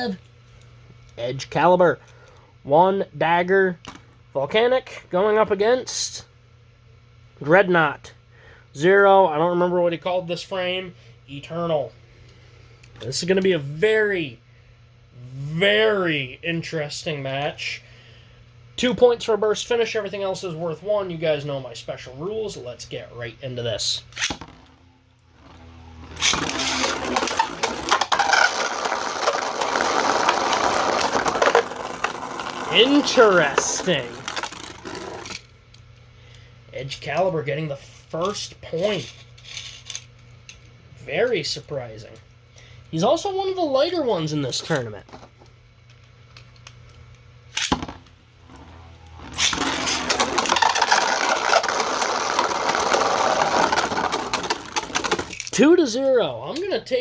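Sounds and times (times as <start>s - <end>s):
spinning tops clashing: 26.2s - 35.4s, 49.3s - 55.6s.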